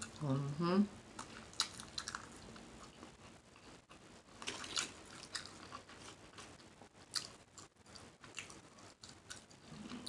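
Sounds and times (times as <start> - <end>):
person chewing and smacking food: 1.1 - 10.0
food crunches: 1.2 - 2.7, 4.4 - 6.5.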